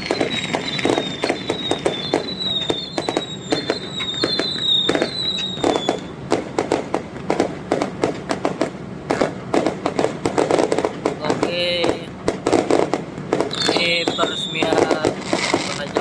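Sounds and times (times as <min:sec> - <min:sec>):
high wavering whistle: 0:00.0 - 0:06.2, 0:13.5 - 0:14.8
fireworks cracking and banging: 0:00.0 - 0:16.0.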